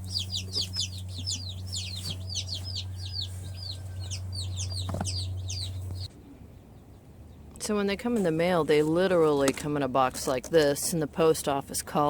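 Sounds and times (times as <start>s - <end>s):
chicks peeping: 0.0s - 7.1s
steady low hum: 0.0s - 9.2s.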